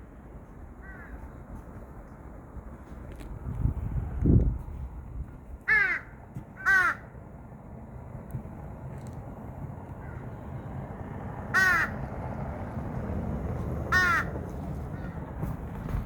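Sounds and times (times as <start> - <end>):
steady low rumble: 0.0 - 16.0
crow cawing: 0.8 - 1.2, 5.7 - 7.1, 10.0 - 10.2, 11.5 - 12.0, 13.9 - 15.2.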